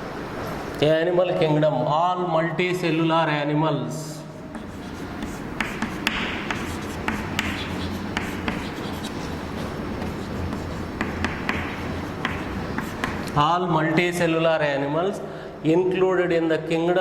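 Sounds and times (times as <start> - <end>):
steady low hum: 4.2 - 14.2
scratchy handwriting strokes: 4.5 - 13.4
sharp taps: 4.6 - 8.8, 10.0 - 13.4.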